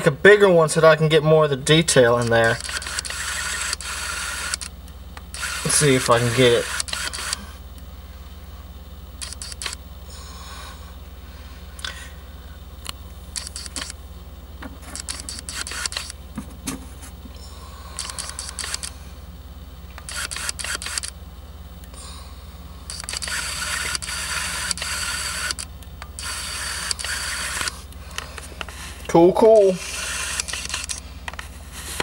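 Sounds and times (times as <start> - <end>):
steady low hum: 0.0 - 32.0
handling clicks and scrapes: 14.6 - 17.4.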